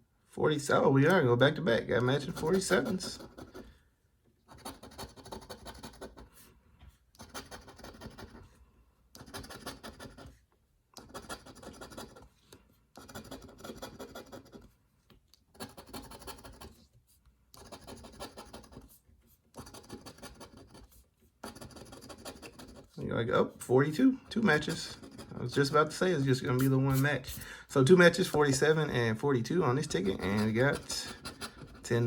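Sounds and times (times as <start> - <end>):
scratching scratch-off ticket: 2.0 - 3.8, 4.5 - 6.4, 7.2 - 8.4, 9.2 - 10.4, 11.0 - 12.4, 13.0 - 14.7, 15.5 - 16.8, 17.6 - 27.5, 29.5 - 32.0.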